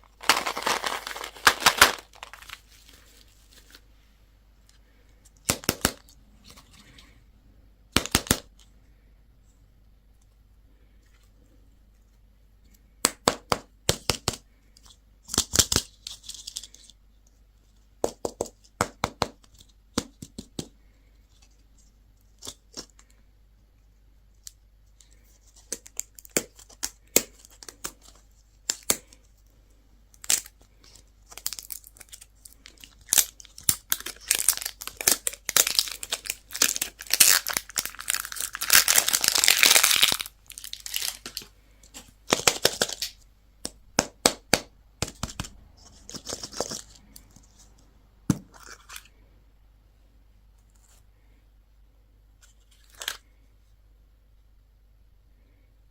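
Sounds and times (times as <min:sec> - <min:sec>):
candy wrappers crinkling and tearing: 0:00.0 - 0:03.8, 0:30.1 - 0:41.5, 0:42.2 - 0:43.2, 0:52.5 - 0:53.3.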